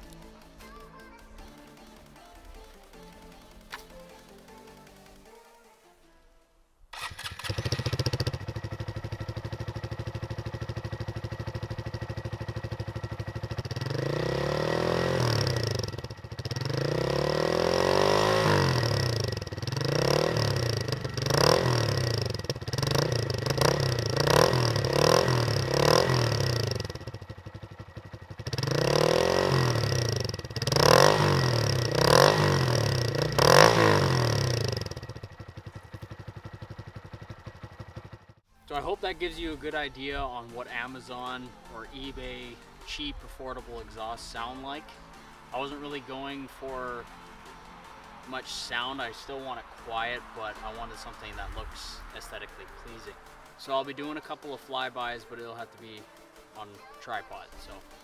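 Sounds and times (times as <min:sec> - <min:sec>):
motorcycle engine idling and revving: 0:00.0 - 0:05.6, 0:06.9 - 0:58.0.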